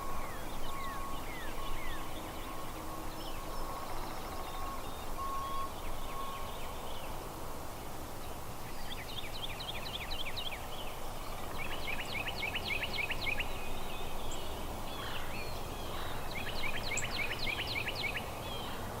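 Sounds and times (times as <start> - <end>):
outdoor background noise: 0.0 - 19.0.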